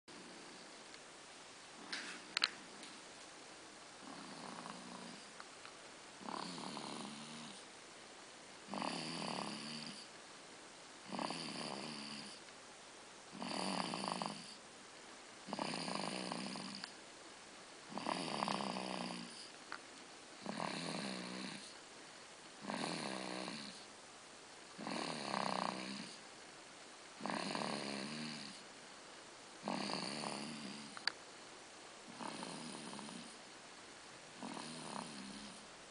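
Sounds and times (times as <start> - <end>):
rhythmic snoring: 4.0 - 5.4, 6.2 - 7.8, 8.6 - 10.2, 11.0 - 12.5, 13.3 - 14.6, 15.4 - 17.0, 17.9 - 19.6, 20.4 - 21.8, 22.6 - 23.9, 24.7 - 26.3, 27.2 - 28.7, 29.6 - 31.1, 32.0 - 33.4, 34.4 - 35.7.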